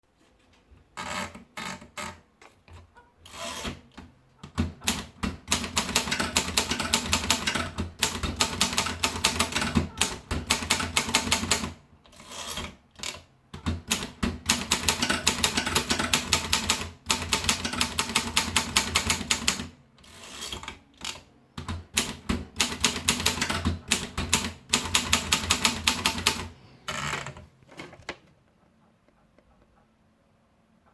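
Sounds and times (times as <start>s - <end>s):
typewriter typing: 3.3s - 27.9s.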